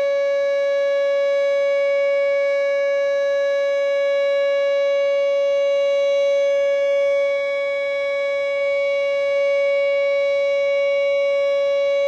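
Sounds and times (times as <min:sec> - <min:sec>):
warning siren steady tone: 0:00.0 - 0:12.0.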